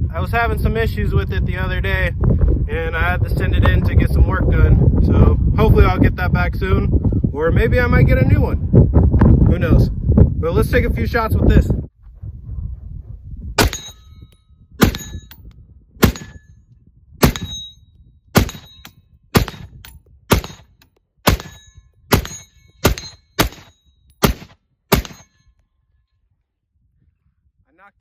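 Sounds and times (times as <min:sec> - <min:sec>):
pistol gunshots: 0:13.6 - 0:14.0, 0:14.8 - 0:15.3, 0:16.0 - 0:16.4, 0:17.2 - 0:17.7, 0:18.4 - 0:25.3.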